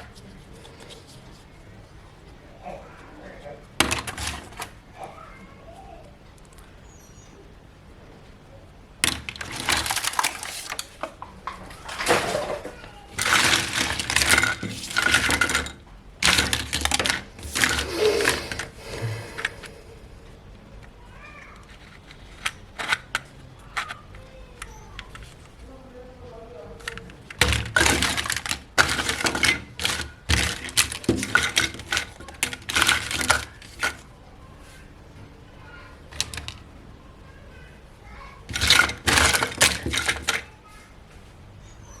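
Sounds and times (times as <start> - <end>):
plastic toy pieces clattering: 3.8 - 5.1, 9.0 - 19.8, 21.6 - 25.6, 26.7 - 34.1, 36.1 - 36.7, 38.4 - 40.6
packaging rustling: 9.1 - 19.8, 26.8 - 34.0.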